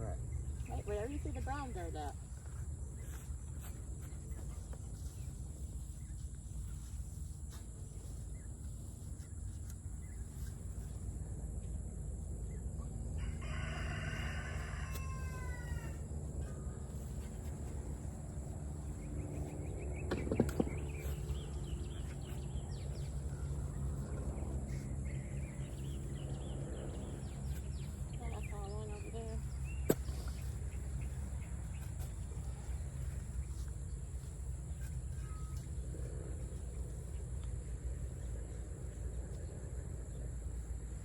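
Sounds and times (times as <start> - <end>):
low outdoor background: 0.0 - 41.0
rooster crowing: 13.2 - 16.1.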